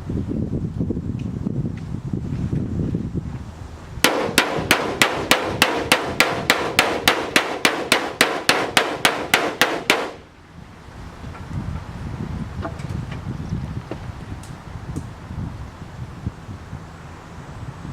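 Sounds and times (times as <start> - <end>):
hammer striking sheet metal: 4.0 - 10.2.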